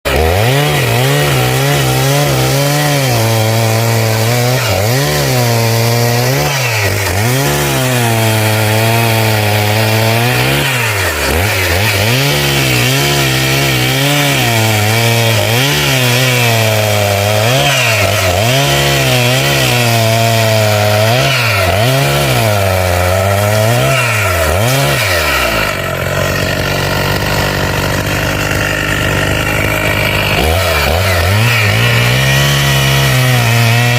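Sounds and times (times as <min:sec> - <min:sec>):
chainsaw engine revving: 0:00.0 - 0:33.9.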